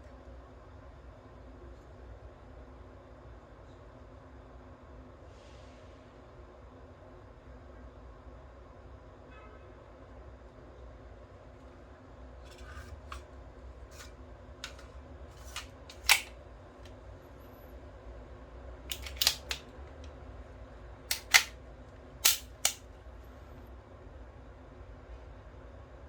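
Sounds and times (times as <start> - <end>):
toy pistol mechanical clicks: 13.9 - 16.3, 18.9 - 19.7, 21.1 - 21.6, 22.2 - 22.8.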